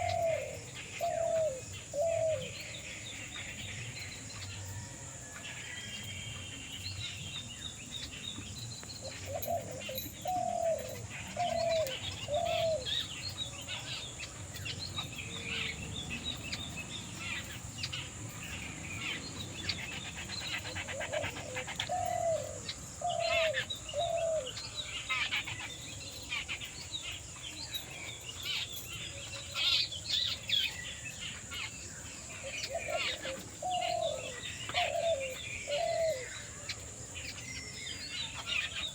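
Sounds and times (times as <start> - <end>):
dove cooing: 0.0 - 3.7, 9.0 - 26.2, 32.3 - 37.1
small birds chirping: 0.0 - 38.9.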